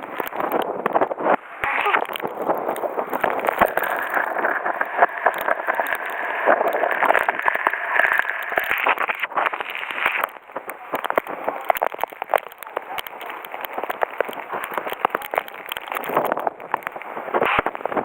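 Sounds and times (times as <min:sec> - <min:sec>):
crackling rain taps: 0:00.0 - 0:18.0
strong wind and rain: 0:00.0 - 0:18.0.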